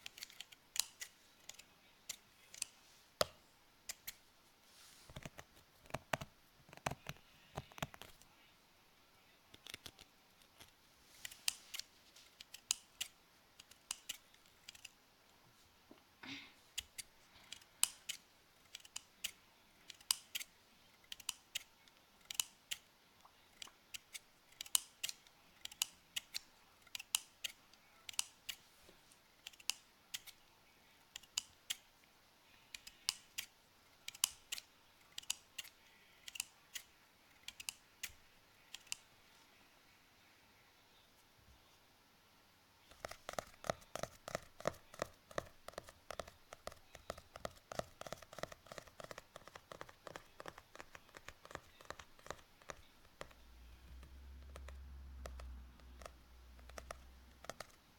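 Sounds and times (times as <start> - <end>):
scissors snipping: 0.0 - 4.2, 9.5 - 15.0, 16.8 - 22.8, 23.6 - 28.6, 32.8 - 39.0, 42.9 - 57.8.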